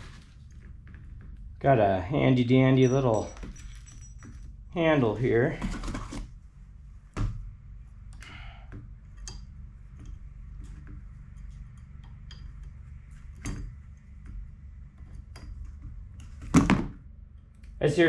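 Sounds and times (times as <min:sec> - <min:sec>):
steady low hum: 0:00.0 - 0:18.0
light metallic clicks and taps: 0:08.8 - 0:14.4.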